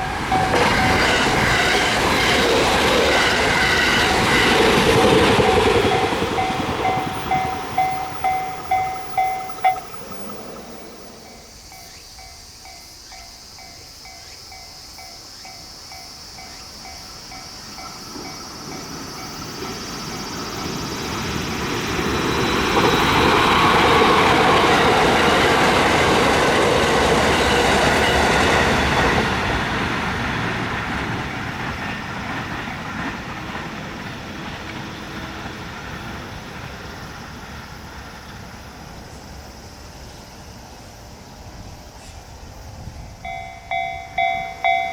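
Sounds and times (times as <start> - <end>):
distant crossing bell: 0.0 - 29.7, 43.0 - 44.9
train rumbling: 0.0 - 44.9
level-crossing alarm two-tone dings: 3.9 - 12.8, 43.2 - 44.9.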